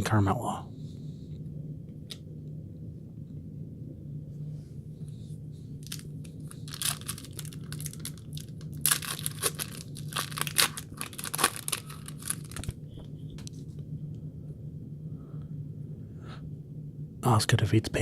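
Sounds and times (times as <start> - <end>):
wrapper being torn and crinkled: 5.8 - 12.8.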